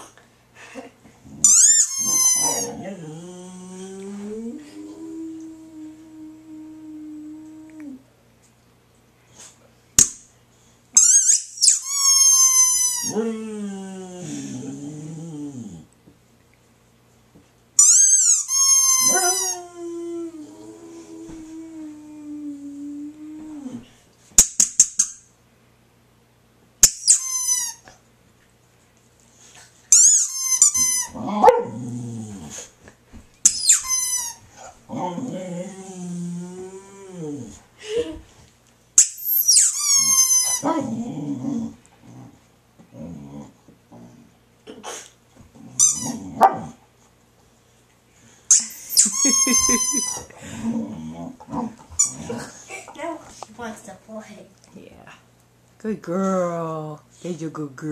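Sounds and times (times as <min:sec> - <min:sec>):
squeaky toy squeaking: 0:01.5 - 0:02.7, 0:11.0 - 0:13.1, 0:17.8 - 0:19.6, 0:26.8 - 0:27.8, 0:29.9 - 0:31.1, 0:33.5 - 0:34.4, 0:39.0 - 0:40.6, 0:48.5 - 0:50.3
dog howling: 0:01.9 - 0:08.0, 0:19.0 - 0:23.8.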